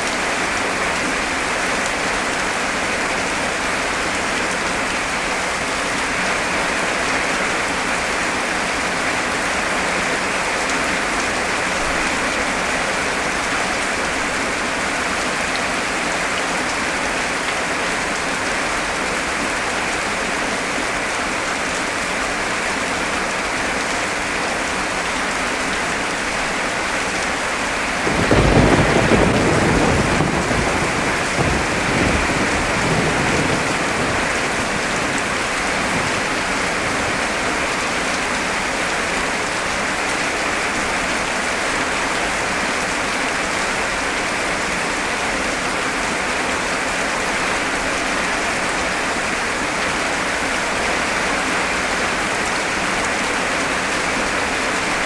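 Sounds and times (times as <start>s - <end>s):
heavy rain: 0.0s - 55.0s
thunder clap rumbling: 28.0s - 36.2s.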